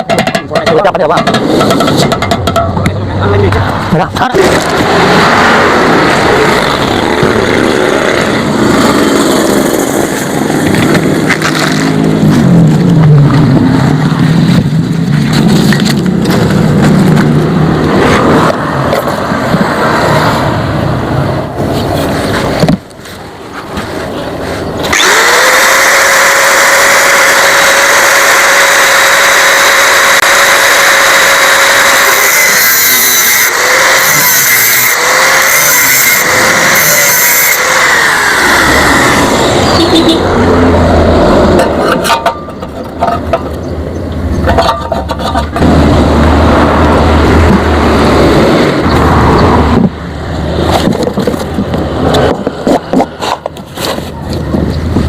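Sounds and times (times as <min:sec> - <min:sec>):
angle grinder cutting metal: 0:04.4 - 0:12.5, 0:24.8 - 0:40.7.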